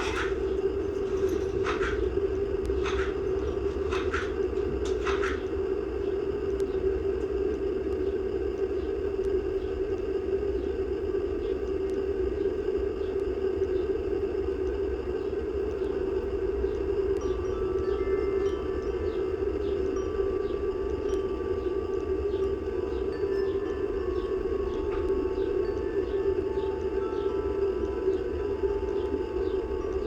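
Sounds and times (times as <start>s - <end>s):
low hum and rumble: 0.0s - 30.0s
faint ticks: 6.5s - 9.4s.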